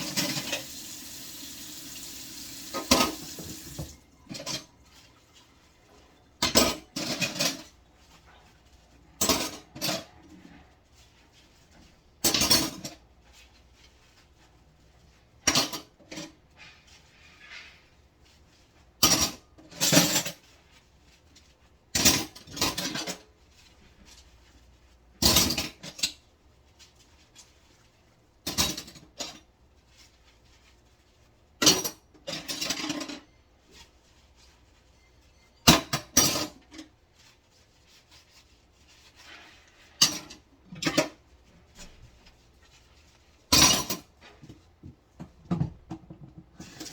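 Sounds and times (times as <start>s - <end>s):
dishes and cutlery clattering: 6.4s - 7.8s, 31.6s - 33.4s, 35.6s - 36.8s.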